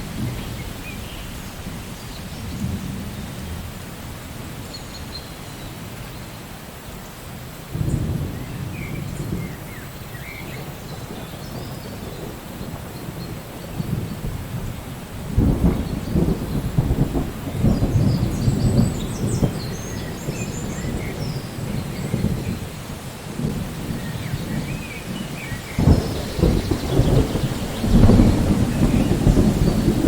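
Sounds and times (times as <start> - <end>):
thunder rumbling: 0.0 - 5.2, 7.7 - 30.0
rain hissing: 0.0 - 30.0
birds chirping: 23.6 - 30.0.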